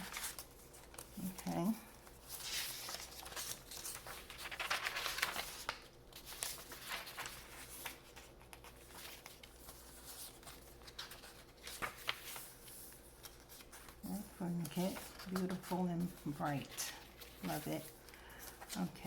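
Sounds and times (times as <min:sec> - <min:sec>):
paper rustling and crackling: 0:00.0 - 0:19.0.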